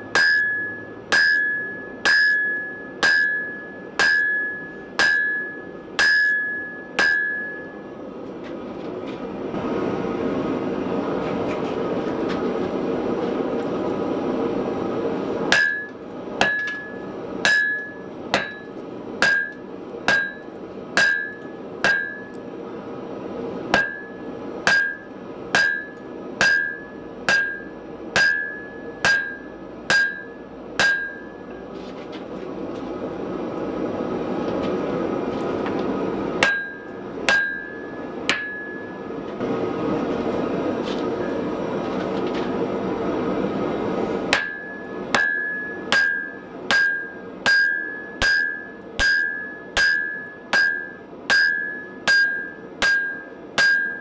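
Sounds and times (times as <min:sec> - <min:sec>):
hammer striking hot steel on anvil: 0:00.0 - 0:07.9, 0:15.5 - 0:22.6, 0:23.7 - 0:31.7, 0:36.4 - 0:39.2, 0:44.3 - 0:54.0.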